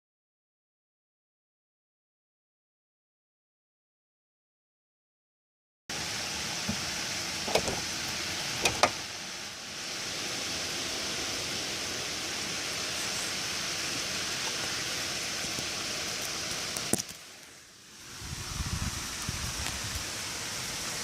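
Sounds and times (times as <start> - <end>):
wind rushing through trees: 5.9 - 21.0.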